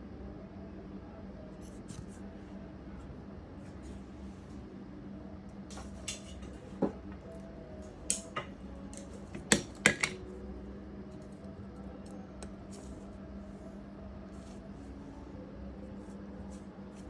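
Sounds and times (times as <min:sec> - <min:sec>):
metal tools clicking and tapping: 0:08.9 - 0:10.2.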